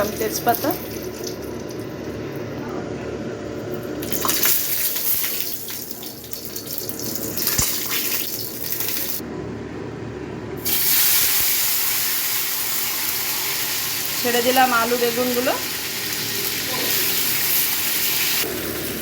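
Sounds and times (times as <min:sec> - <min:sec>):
spices sizzling in hot oil: 0:04.0 - 0:09.2, 0:10.6 - 0:19.0.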